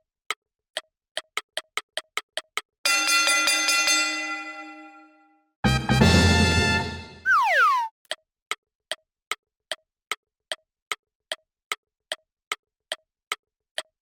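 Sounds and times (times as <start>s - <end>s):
falling whistle glide: 7.3s - 7.9s.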